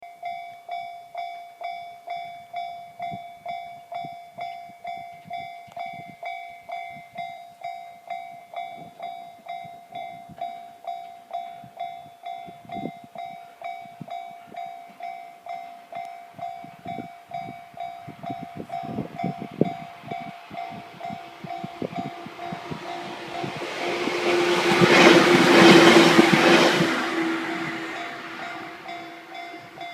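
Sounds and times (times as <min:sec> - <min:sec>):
level-crossing warning bell: 0:00.0 - 0:29.9
train rumble and clatter: 0:16.7 - 0:29.9.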